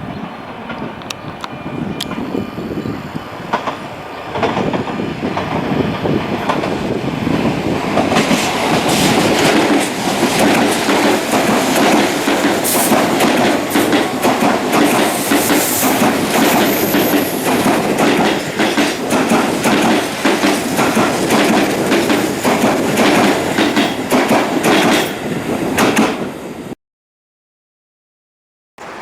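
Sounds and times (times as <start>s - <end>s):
train wheels clattering over rail joints: 3.5s - 26.2s.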